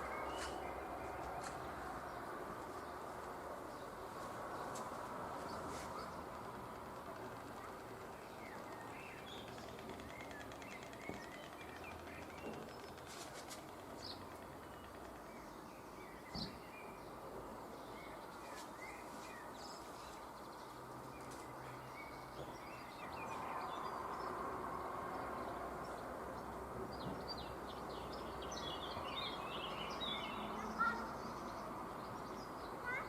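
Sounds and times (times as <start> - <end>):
small birds chirping: 0.0 - 33.0.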